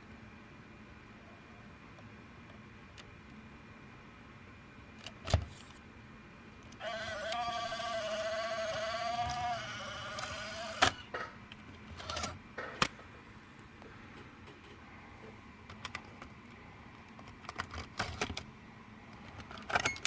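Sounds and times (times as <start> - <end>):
tape motor whining: 6.8 - 11.2, 11.9 - 12.4.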